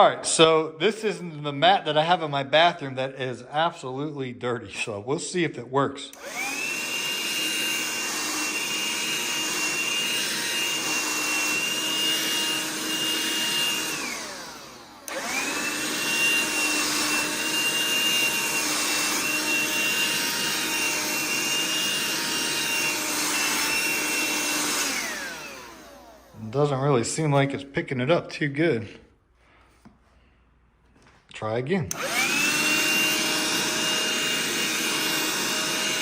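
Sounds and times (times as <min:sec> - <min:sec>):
handheld vacuum whining: 0:06.0 - 0:28.1, 0:31.9 - 0:36.0.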